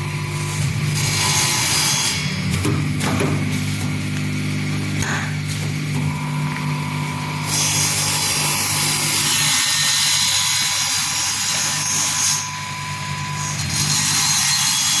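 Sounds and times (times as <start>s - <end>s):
saw motor hum: 0.0s - 15.0s
saw blade cutting wood: 7.4s - 12.6s, 13.3s - 15.0s.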